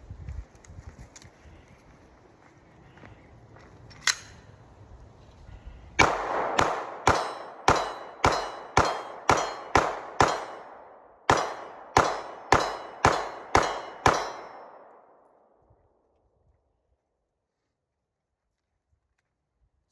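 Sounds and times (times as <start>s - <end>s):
pistol shots: 6.0s - 15.2s.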